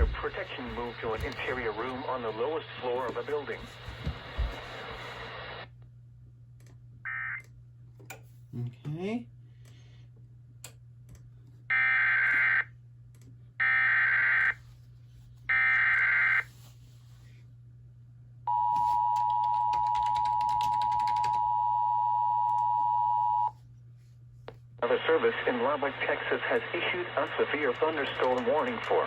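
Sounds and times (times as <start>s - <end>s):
faint steady hum: 0.0s - 29.0s.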